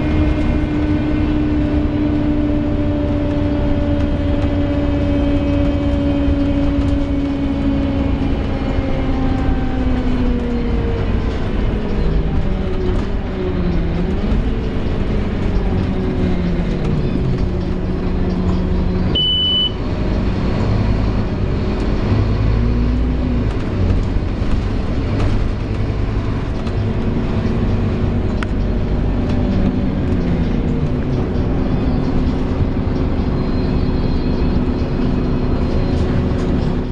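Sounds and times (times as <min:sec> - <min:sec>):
bus engine running: 0:00.0 - 0:36.9
short high beep: 0:19.2 - 0:19.8.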